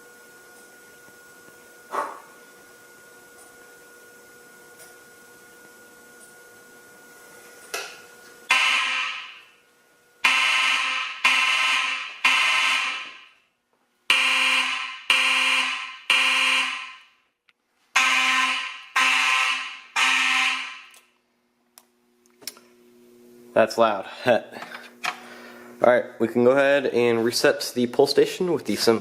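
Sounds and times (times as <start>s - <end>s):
fire alarm tones: 8.5s - 9.5s, 10.2s - 13.4s, 14.1s - 17.1s, 18.0s - 21.0s.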